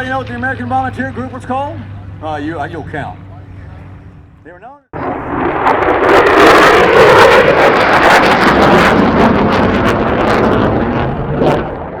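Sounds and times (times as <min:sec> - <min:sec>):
aircraft flying past: 0:00.0 - 0:12.0
loud rushing noise with crackling: 0:05.0 - 0:12.0.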